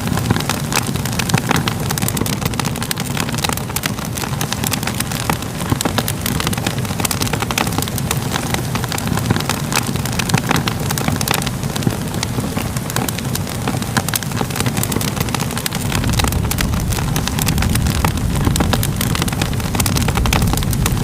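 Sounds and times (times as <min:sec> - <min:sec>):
fire crackling and popping: 0:00.0 - 0:21.0
low rumble: 0:15.7 - 0:21.0.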